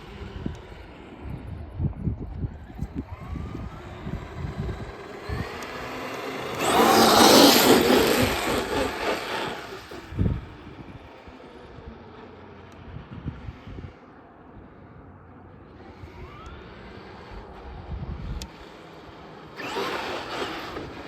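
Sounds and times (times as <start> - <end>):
motor and tyre rush: 0.0 - 21.0
rc truck motor whine: 0.0 - 21.0
wind buffeting on microphone: 0.1 - 11.1, 17.3 - 18.5.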